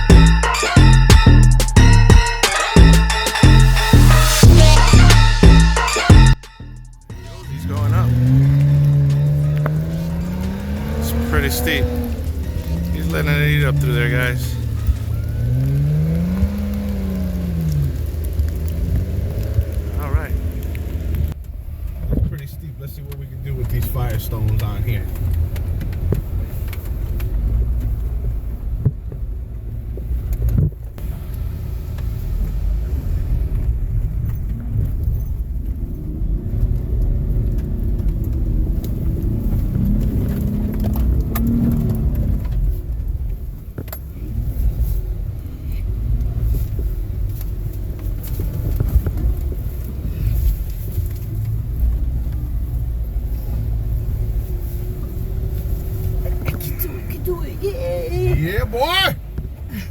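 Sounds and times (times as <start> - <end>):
off-road engine revving in mud: 7.1 - 21.4, 31.0 - 58.4.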